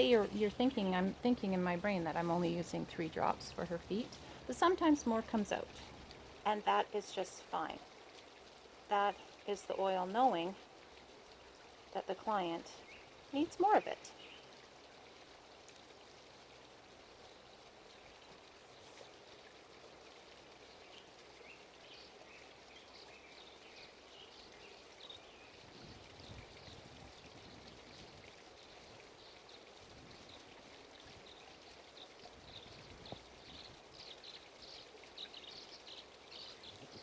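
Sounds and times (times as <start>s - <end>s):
small birds chirping: 0.0s - 7.8s, 12.0s - 14.5s, 20.8s - 28.3s, 29.0s - 37.0s
soft steady hiss: 0.0s - 37.0s.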